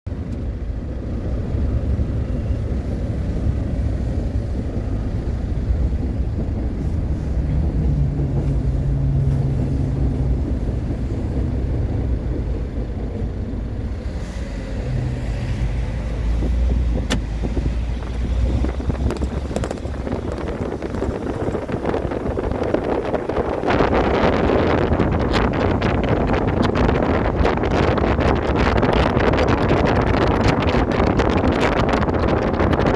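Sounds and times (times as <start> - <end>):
train rumbling over steel bridge: 0.1 - 32.9
wind buffeting microphone: 0.1 - 32.9
low hum: 0.2 - 23.4.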